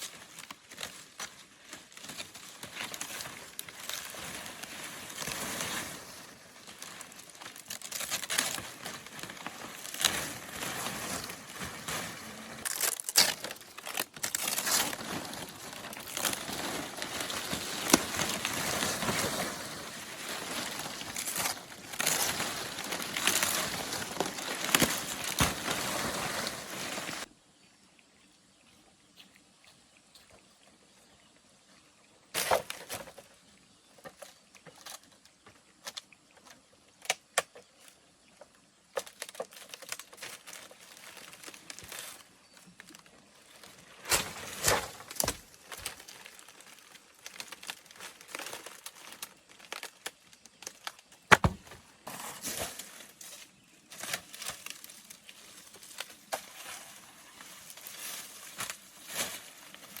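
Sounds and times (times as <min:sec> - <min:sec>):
dry palm leaves rustling: 0:00.0 - 0:27.3, 0:39.0 - 1:00.0.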